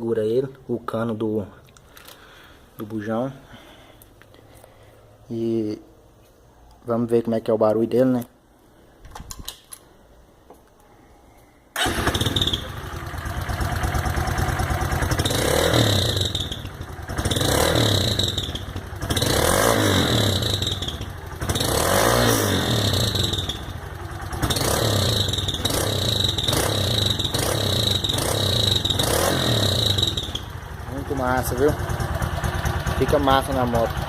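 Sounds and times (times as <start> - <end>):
motorcycle engine revving: 11.8 - 34.0.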